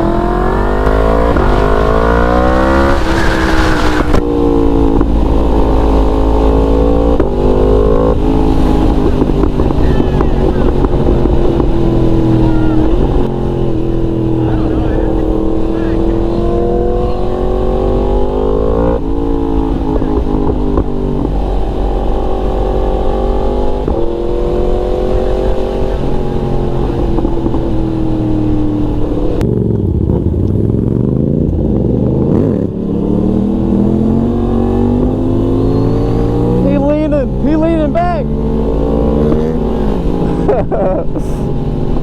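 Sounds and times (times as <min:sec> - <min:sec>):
motorcycle engine revving: 0:00.0 - 0:42.0.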